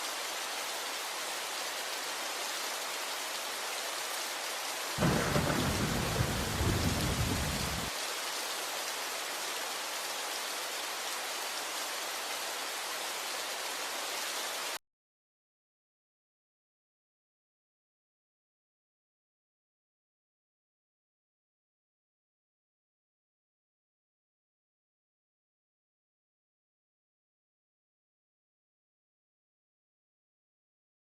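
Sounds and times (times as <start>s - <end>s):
steady rain: 0.0s - 14.8s
thunder rumbling: 5.0s - 7.9s.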